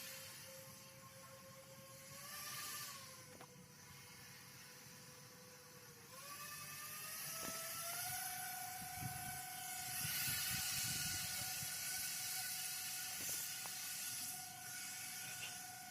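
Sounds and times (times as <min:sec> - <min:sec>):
electric motor whining: 0:00.0 - 0:15.9
rushing hiss: 0:10.0 - 0:15.8.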